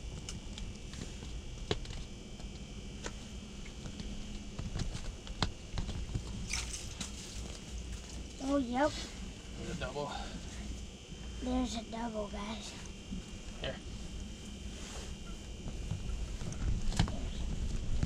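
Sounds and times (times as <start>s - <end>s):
low steady hum: 0.0s - 18.0s.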